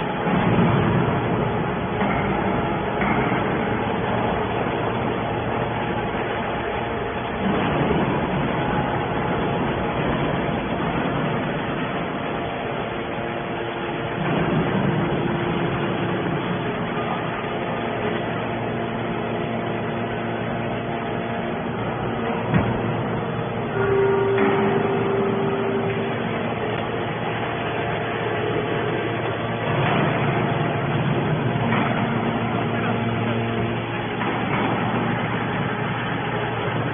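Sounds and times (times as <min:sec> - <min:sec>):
hydraulic baler running: 0:00.0 - 0:36.9
faint whine: 0:15.1 - 0:36.9.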